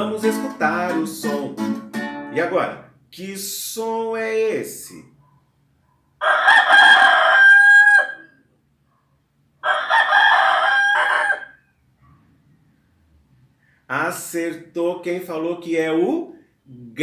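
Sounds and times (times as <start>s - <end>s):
rooster crowing: 6.2s - 8.4s, 9.6s - 11.7s.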